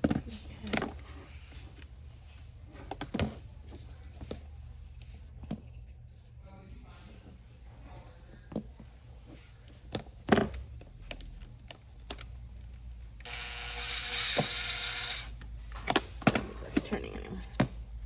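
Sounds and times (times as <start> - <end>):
ratchet-like mechanical whirring: 13.2 - 15.3.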